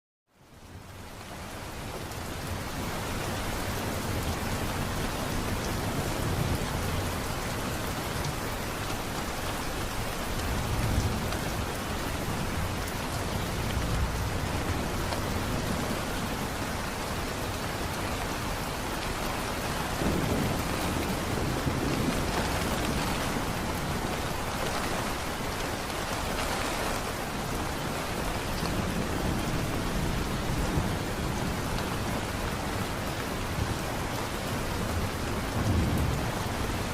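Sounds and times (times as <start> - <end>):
heavy rain falling: 0.4 - 36.9
distant thunder rolling: 19.8 - 26.4.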